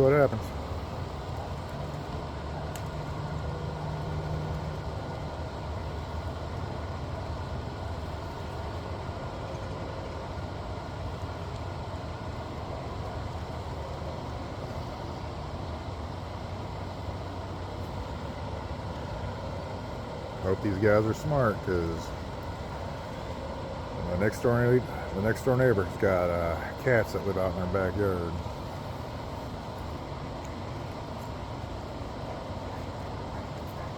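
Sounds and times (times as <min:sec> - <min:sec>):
low motor hum: 0:00.0 - 0:33.9.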